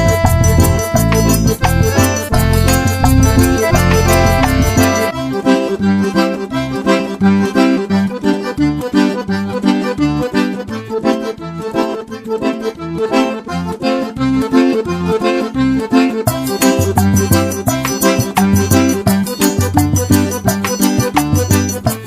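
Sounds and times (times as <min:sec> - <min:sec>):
pulsing bass beat: 0:00.0 - 0:05.1, 0:16.3 - 0:22.0
accordion music: 0:00.0 - 0:22.0.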